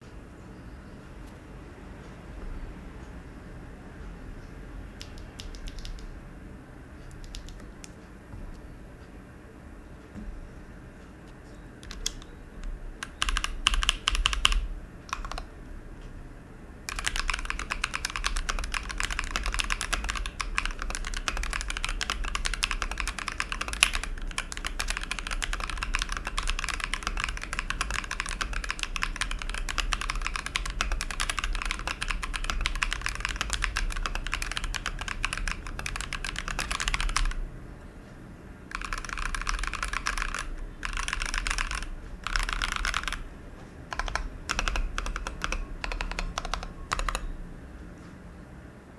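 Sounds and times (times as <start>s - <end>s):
typing on mechanical keyboard: 5.0s - 6.2s, 7.1s - 8.0s, 11.8s - 15.5s, 16.9s - 37.4s, 38.7s - 43.3s, 43.9s - 47.4s.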